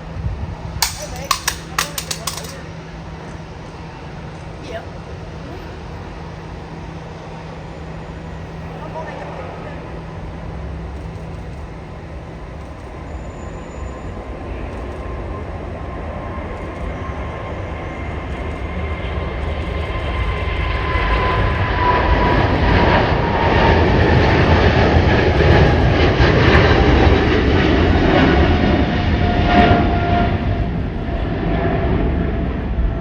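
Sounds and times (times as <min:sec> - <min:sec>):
jet aircraft passing: 0:13.7 - 0:33.0.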